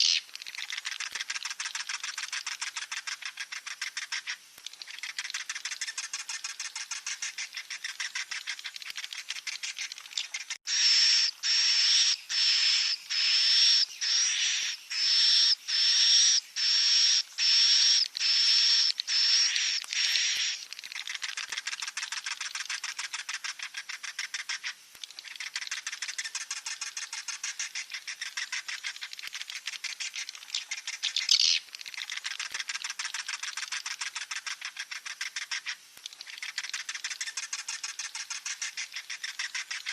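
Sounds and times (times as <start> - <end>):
shrill bird cries: 0.0 - 0.3, 10.7 - 20.6
bird chicks chattering: 0.0 - 39.9.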